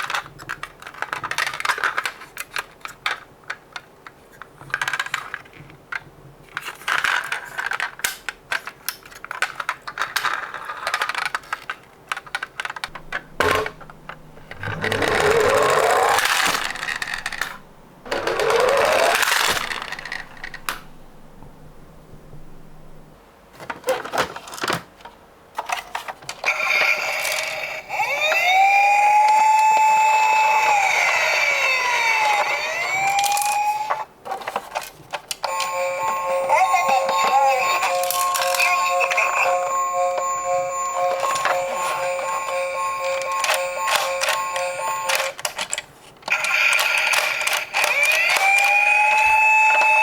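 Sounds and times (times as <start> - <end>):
toy cars clinking together: 14.6 - 20.8, 26.5 - 34.0, 35.4 - 50.0.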